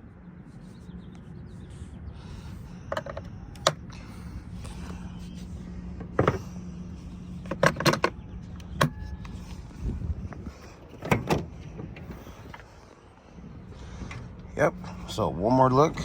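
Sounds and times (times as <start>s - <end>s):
steady low hum: 0.0s - 16.0s
sharp clicks and knocks: 7.4s - 8.9s.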